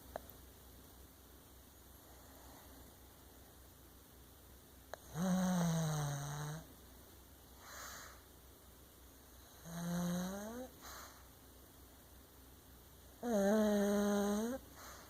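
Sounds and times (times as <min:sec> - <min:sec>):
dog snoring: 0:05.0 - 0:06.7, 0:09.4 - 0:11.2, 0:13.2 - 0:15.0.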